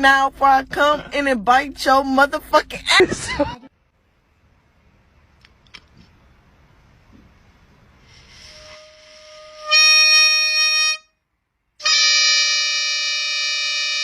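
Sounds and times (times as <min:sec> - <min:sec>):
harmonica long held notes: 0:08.3 - 0:11.1, 0:11.8 - 0:14.0.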